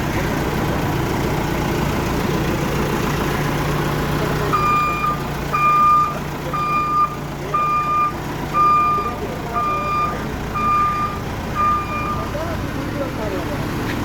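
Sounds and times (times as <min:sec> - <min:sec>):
diesel engine running: 0:00.0 - 0:14.0
reversing alarm beeping: 0:04.5 - 0:12.4.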